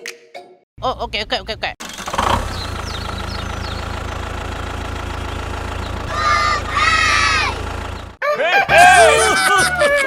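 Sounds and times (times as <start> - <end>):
engine humming: 0.8 - 10.0
high-pitched voices calling out: 6.1 - 7.6, 8.2 - 10.0.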